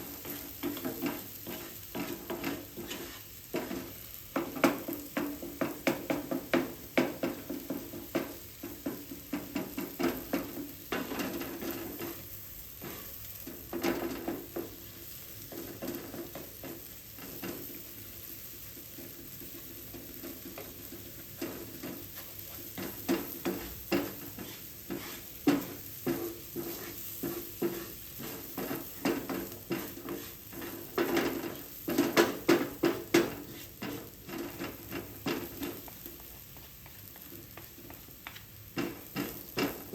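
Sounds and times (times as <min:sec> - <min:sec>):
curry sizzling in a pan: 0:00.0 - 0:39.9
utensil knocking against a pan: 0:00.2 - 0:12.2, 0:19.9 - 0:36.0, 0:38.8 - 0:39.9.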